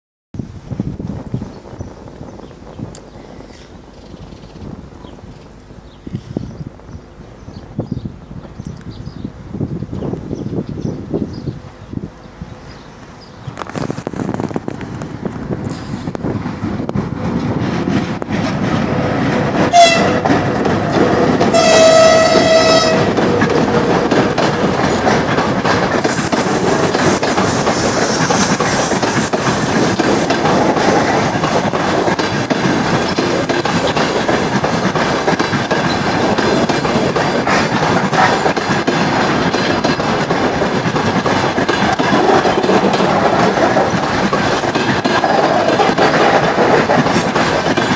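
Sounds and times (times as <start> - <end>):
train rumble: 0.4 - 47.9
wheels clattering over rail joints: 13.2 - 47.9
locomotive horn: 19.7 - 20.4, 21.4 - 23.4.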